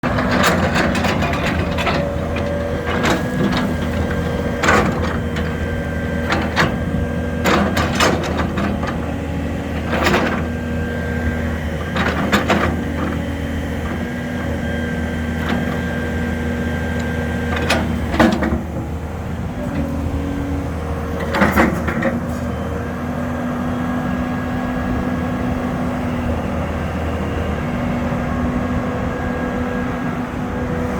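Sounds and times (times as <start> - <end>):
excavator engine hum: 0.0 - 30.9
metallic clanks and knocks: 0.1 - 9.1, 17.0 - 19.0.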